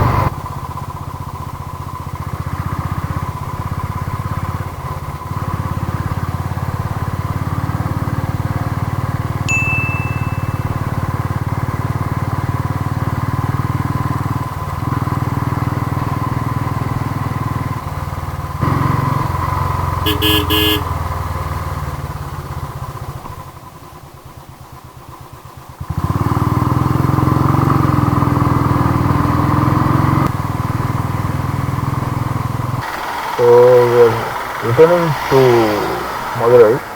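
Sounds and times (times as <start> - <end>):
motorcycle engine running: 0.0 - 36.9
horn beeps: 9.5 - 11.2, 20.1 - 20.9.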